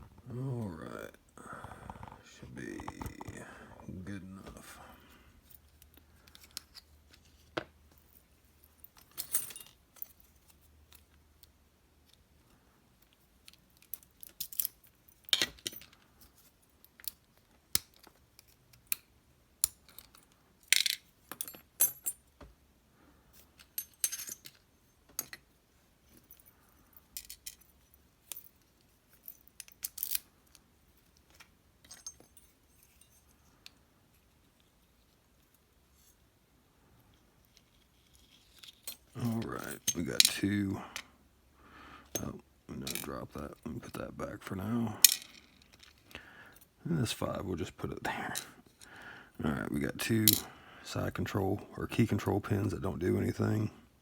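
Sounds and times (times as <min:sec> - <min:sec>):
small metal lock parts clicking: 0:13.0 - 0:16.0, 0:26.3 - 0:33.8.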